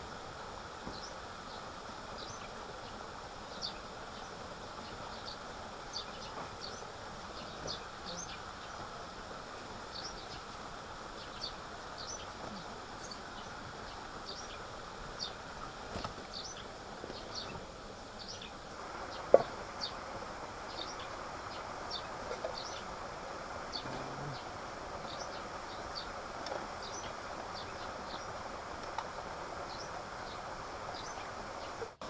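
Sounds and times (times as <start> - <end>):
steady rushing hiss: 0.0 - 32.0.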